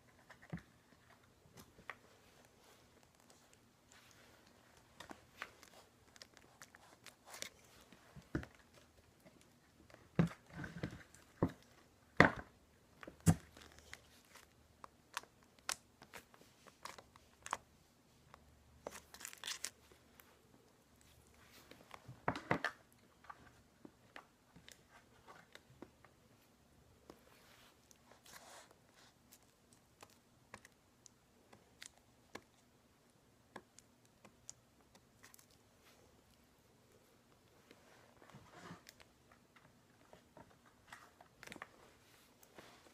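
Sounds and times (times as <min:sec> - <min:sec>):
slime and plastic packaging crackling: 0:01.2 - 0:26.1.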